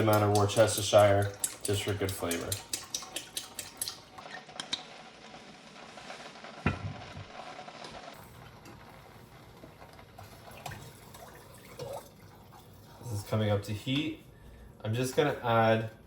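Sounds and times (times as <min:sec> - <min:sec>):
utensil clinking against bowl: 0:00.0 - 0:04.0
faint kitchen noise: 0:00.0 - 0:16.0.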